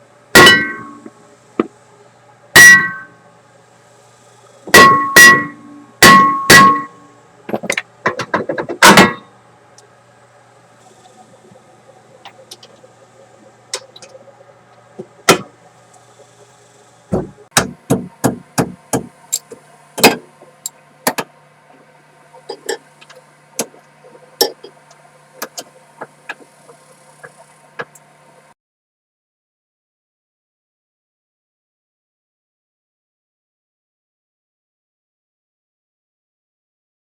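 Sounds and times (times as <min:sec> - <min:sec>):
hammer striking wheel hub: 0:00.4 - 0:01.7, 0:02.6 - 0:03.2, 0:04.7 - 0:09.3, 0:15.3 - 0:15.5, 0:17.2 - 0:20.4, 0:24.4 - 0:24.7.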